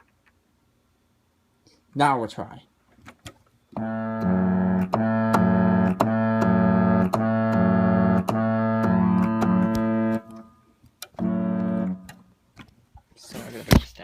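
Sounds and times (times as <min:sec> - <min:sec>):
electronic keyboard low detuned chord: 0:03.8 - 0:12.4.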